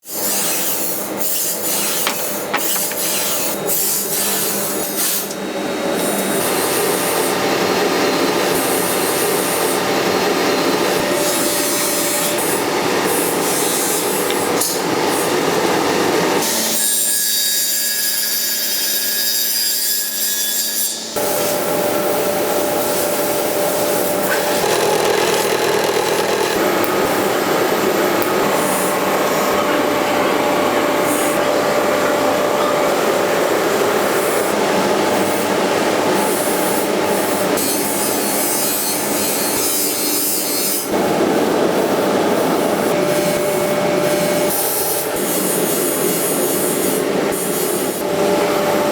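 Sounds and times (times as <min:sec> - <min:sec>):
grinding whine: 0:21.3 - 0:34.4.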